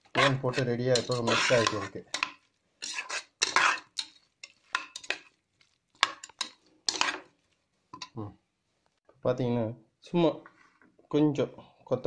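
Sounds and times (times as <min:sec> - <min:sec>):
spoon scraping and knocking pan: 0:00.0 - 0:08.2.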